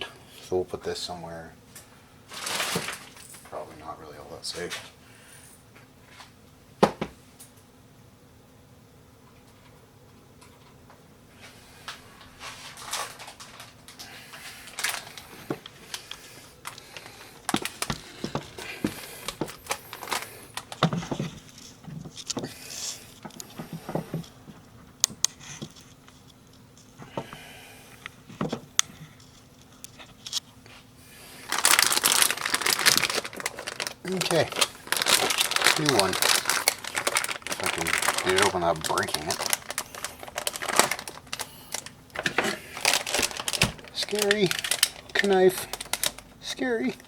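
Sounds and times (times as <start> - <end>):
packaging crinkling: 2.3 - 3.5, 11.9 - 26.4, 31.2 - 47.0
hands handling computer hardware: 14.7 - 22.5.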